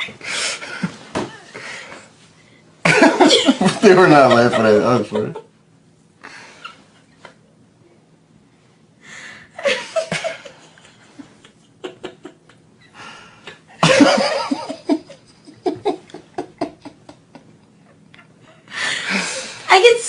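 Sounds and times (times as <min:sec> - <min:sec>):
person laughing: 0:13.8 - 0:17.5.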